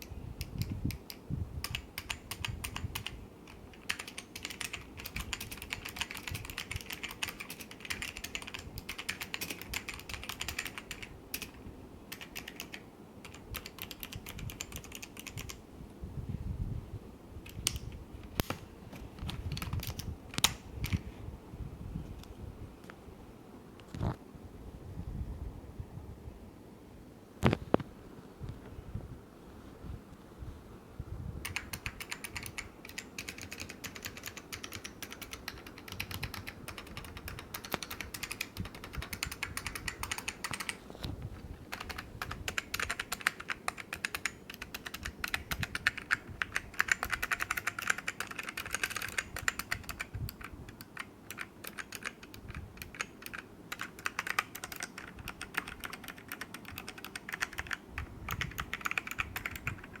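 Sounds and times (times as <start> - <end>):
clicky keyboard typing: 0.0 - 15.6, 17.4 - 21.0, 31.4 - 40.8, 41.7 - 60.0.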